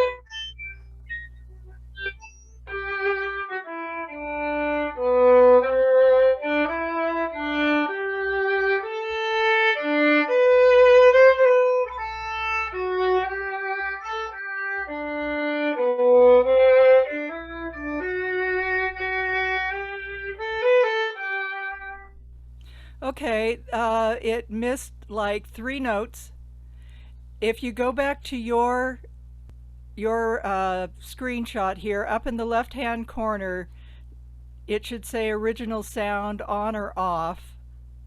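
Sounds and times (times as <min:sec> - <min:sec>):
solo violin slow melody: 0:00.0 - 0:00.8, 0:01.6 - 0:22.2.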